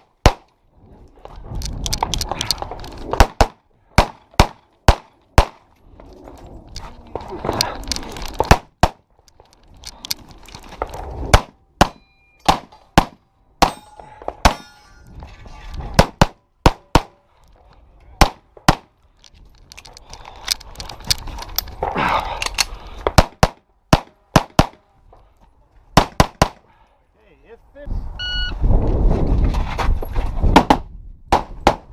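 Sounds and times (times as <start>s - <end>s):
metallic ring of steel targets: 11.9s - 13.0s, 13.6s - 15.6s.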